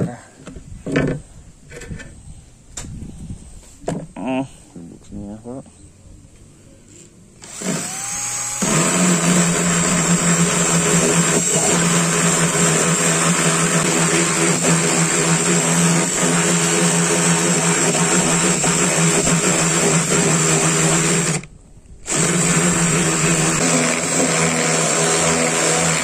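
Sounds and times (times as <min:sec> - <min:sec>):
electric saw cutting wood: 0:07.4 - 0:26.0.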